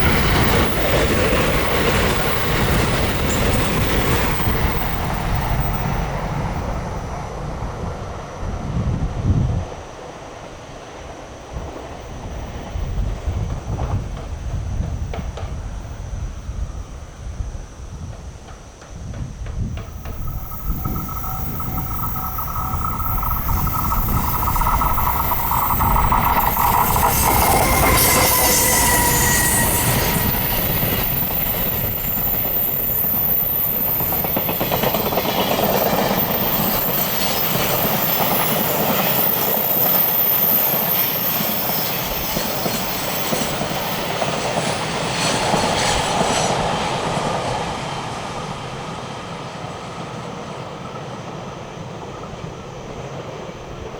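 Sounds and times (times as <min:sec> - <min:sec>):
train wheel and rail noise: 0:00.0 - 0:53.9
ringing crossing tones: 0:19.8 - 0:44.2
high wheel squeal: 0:19.8 - 0:45.9.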